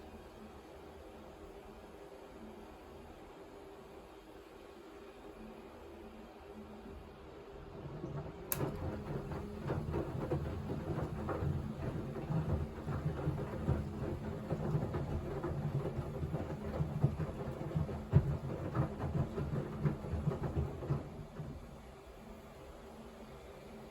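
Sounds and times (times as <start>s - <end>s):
washing machine motor hum: 7.2s - 23.9s
wet towels tumbling in drum: 7.7s - 21.8s.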